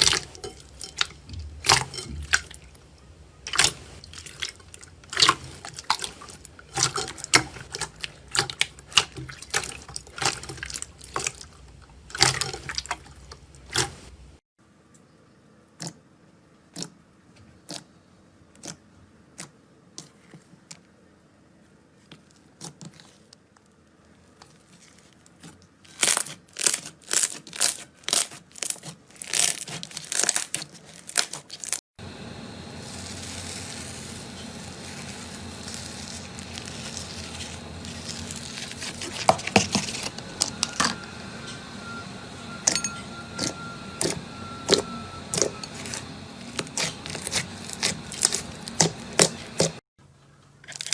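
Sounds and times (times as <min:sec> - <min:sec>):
slime squeezed crackling and popping: 0:25.9 - 0:31.8.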